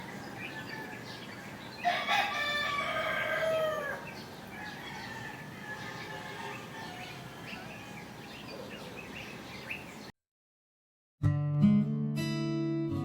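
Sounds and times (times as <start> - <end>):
small birds chirping faintly: 0.0 - 10.1
rooster crowing: 1.8 - 8.2.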